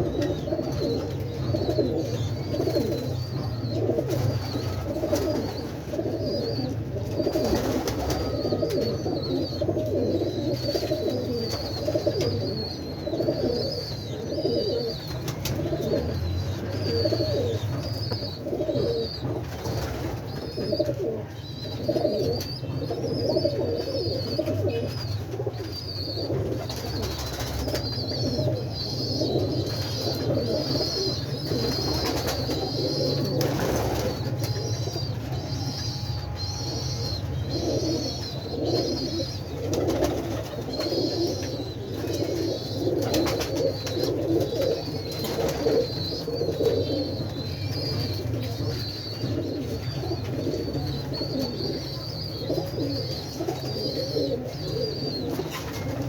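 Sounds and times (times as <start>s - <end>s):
birds cooing: 0.0s - 56.0s
high bird chirp: 0.0s - 56.0s.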